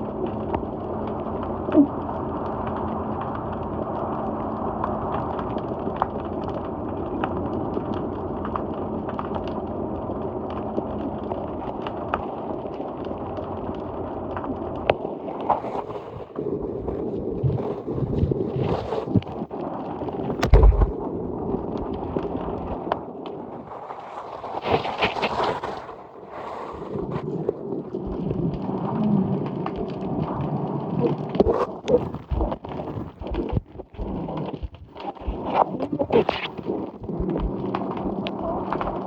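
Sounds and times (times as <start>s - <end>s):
low thumps: 20.4s - 21.0s
small clicks and pops: 27.3s - 39.0s
seawater washing: 31.0s - 39.0s.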